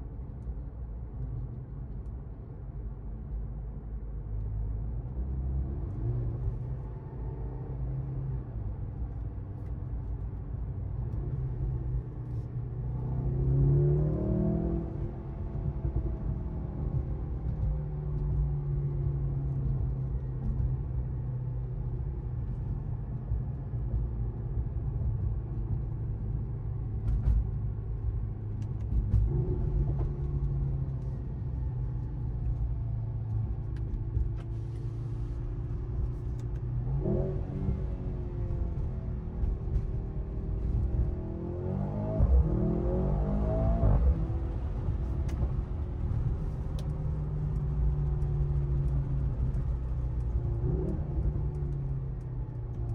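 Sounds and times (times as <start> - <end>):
road rumble: 0.0 - 52.9
car engine accelerating: 11.0 - 23.6, 24.6 - 52.9.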